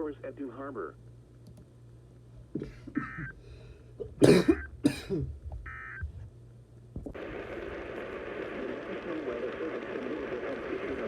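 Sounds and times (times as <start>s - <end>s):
throat clearing: 2.5s - 3.4s, 4.0s - 5.4s
person coughing: 2.6s - 3.3s, 4.1s - 5.4s.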